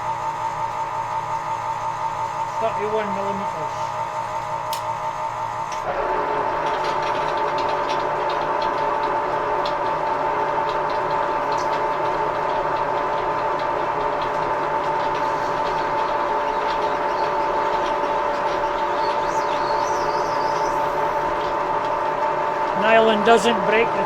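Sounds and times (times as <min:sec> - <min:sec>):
gear whine: 0:00.0 - 0:24.0
lathe running: 0:00.0 - 0:24.0.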